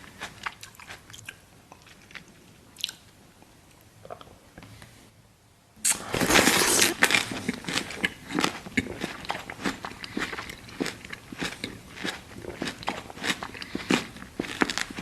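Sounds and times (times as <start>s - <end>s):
crunchy chewing: 0.0s - 3.0s, 5.9s - 15.0s
loud bite: 5.8s - 14.9s.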